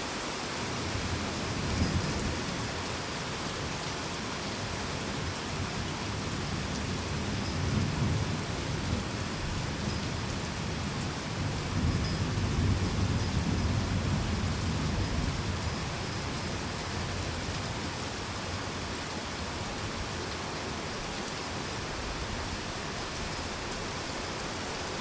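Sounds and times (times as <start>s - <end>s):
heavy rain: 0.0s - 25.0s
low rolling thunder: 6.4s - 16.4s.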